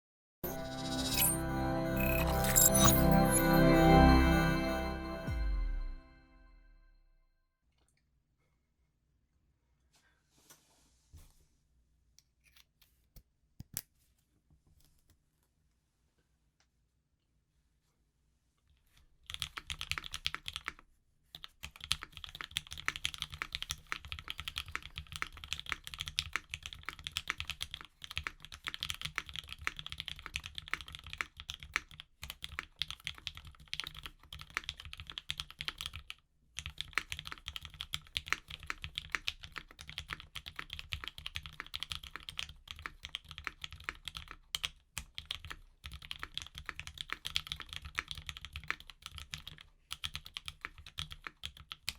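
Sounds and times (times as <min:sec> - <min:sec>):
mechanical keyboard typing: 0:19.3 - 0:20.8, 0:21.4 - 0:51.9.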